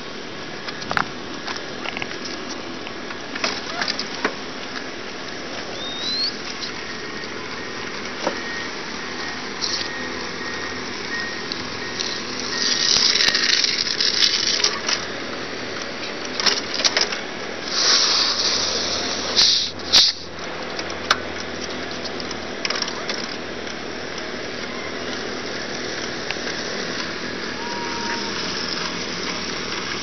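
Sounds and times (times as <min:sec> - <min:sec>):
mechanical rattle: 0:12.0 - 0:15.0
hissing bursts: 0:17.6 - 0:20.3.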